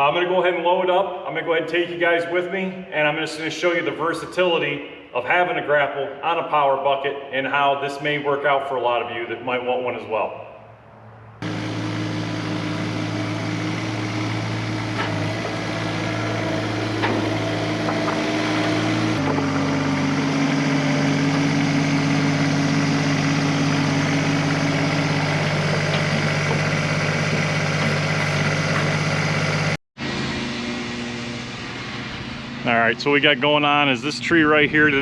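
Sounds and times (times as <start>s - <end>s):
engine running: 11.0s - 35.0s.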